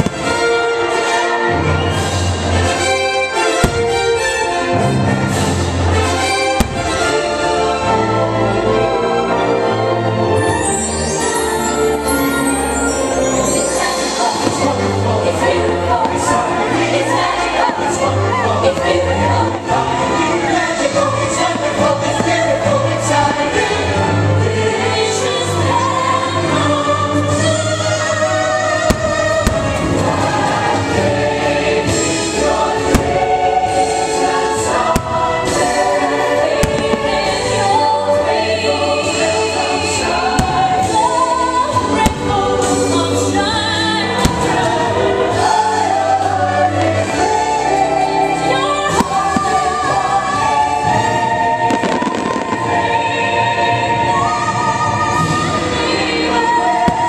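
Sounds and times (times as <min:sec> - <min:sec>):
choir singing: 0:00.0 - 0:57.0
orchestral music: 0:00.0 - 0:57.0
firework bursts: 0:03.5 - 0:04.6, 0:06.4 - 0:07.5, 0:28.7 - 0:31.0, 0:31.9 - 0:37.8, 0:39.1 - 0:45.5.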